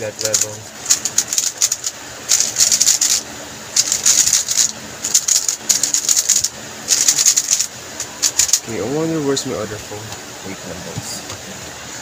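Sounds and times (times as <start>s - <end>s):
rapid plastic clicking of puzzle cube: 3.8s - 8.6s.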